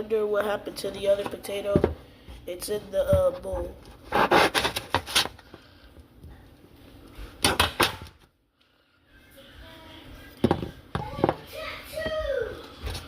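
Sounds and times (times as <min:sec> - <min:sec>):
kitchen things knocking and clattering: 0:10.4 - 0:11.4.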